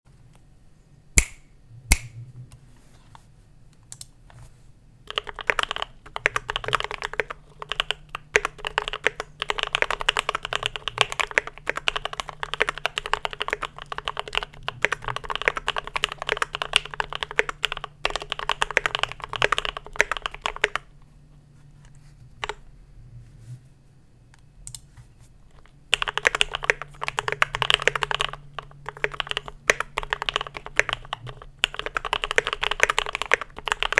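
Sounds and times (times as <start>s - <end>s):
faint low hum: 0.1s - 33.9s
mechanical keyboard typing: 5.1s - 20.9s, 25.5s - 33.9s.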